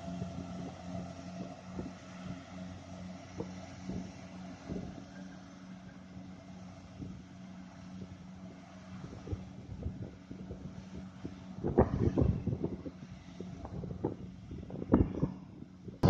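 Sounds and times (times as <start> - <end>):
farm machine engine droning: 0.0 - 16.0.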